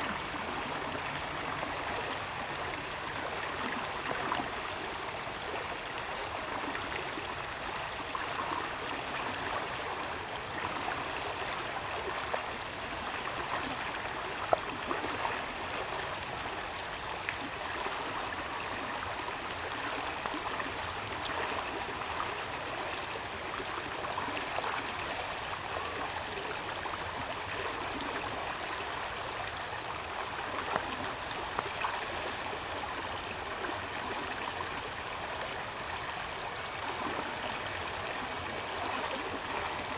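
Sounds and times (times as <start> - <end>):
faint high pulsing tone: 0.0 - 39.9
stream water rushing: 0.0 - 39.9.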